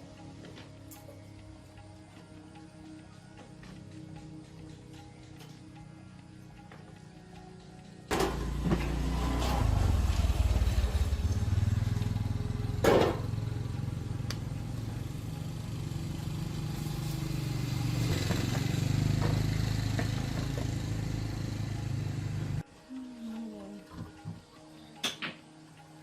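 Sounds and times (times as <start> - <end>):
small engine running: 8.1 - 22.6.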